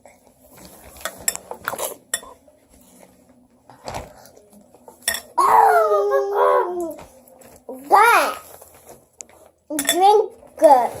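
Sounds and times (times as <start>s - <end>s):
spoon clinking against bowl: 9.8s - 10.0s.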